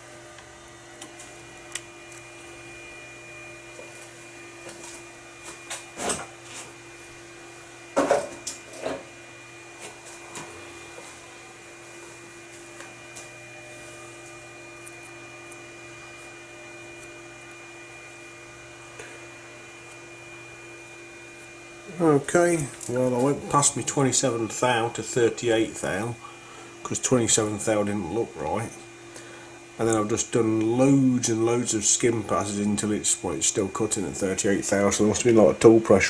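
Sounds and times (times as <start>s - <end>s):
metal lathe whining: 10.0s - 36.0s.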